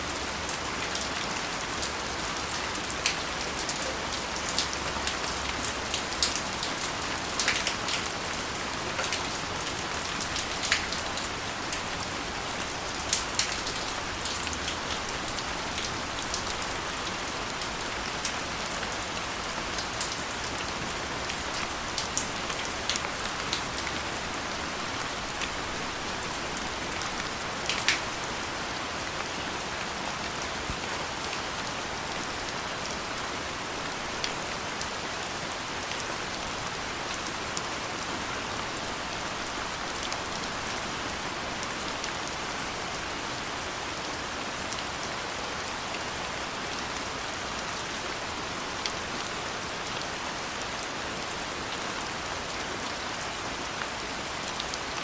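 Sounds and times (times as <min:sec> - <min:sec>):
steady rain falling: 0:00.0 - 0:55.0
raindrops tapping close by: 0:00.2 - 0:32.2.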